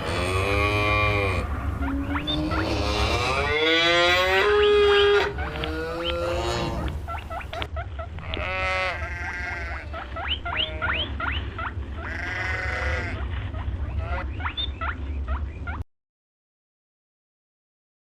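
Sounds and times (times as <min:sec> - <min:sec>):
low rumble: 0:00.0 - 0:15.8
sheep or goat bleating: 0:08.2 - 0:11.1, 0:12.0 - 0:13.2.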